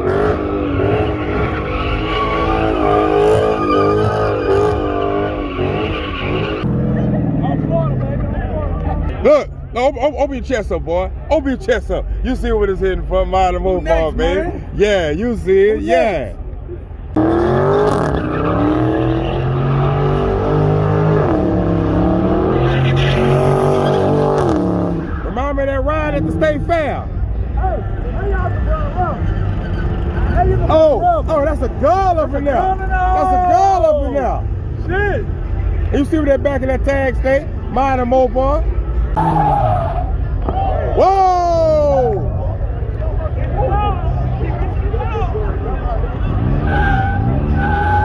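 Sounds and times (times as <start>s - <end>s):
car engine revving: 0.0s - 9.2s, 17.0s - 26.9s
tyres skidding: 0.0s - 9.7s, 10.3s - 41.1s, 42.0s - 48.0s.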